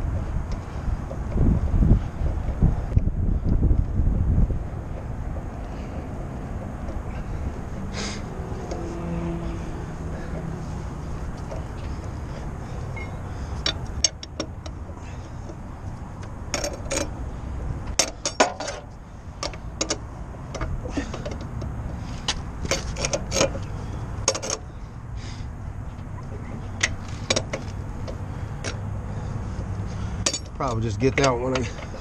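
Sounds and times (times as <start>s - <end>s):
steady low rumble: 0.0s - 32.0s
lug wrench metal clinks: 12.9s - 14.4s, 16.5s - 17.1s, 30.2s - 31.8s.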